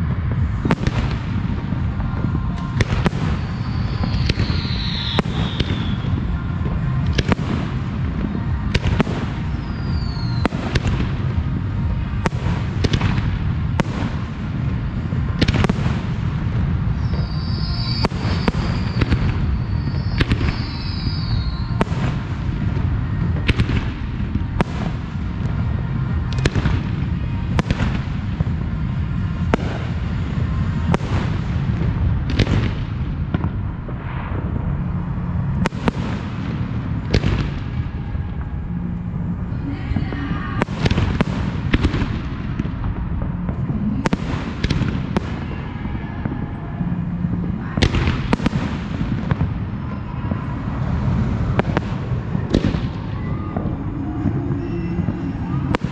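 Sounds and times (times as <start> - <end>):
low rumble: 0.0 - 55.9
firework whistles: 0.5 - 13.2, 14.9 - 28.3, 43.7 - 55.9.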